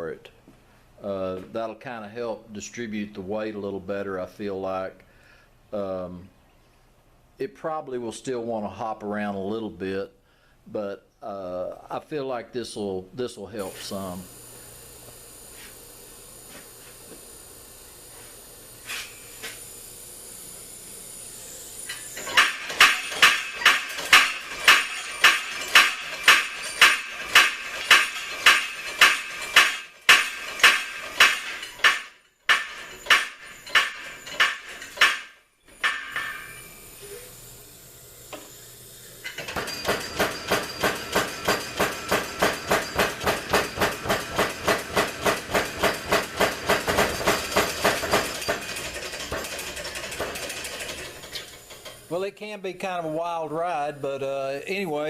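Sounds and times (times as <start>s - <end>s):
power hammer striking: 18.7s - 37.2s, 39.2s - 52.1s.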